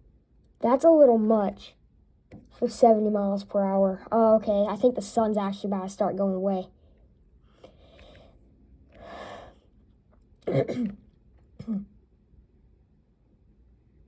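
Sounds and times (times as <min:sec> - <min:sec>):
person breathing softly: 0:06.8 - 0:09.7.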